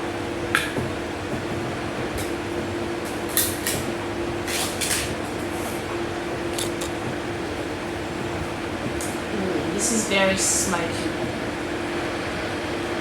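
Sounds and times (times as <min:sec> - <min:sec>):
steady hum: 0:05.7 - 0:13.0.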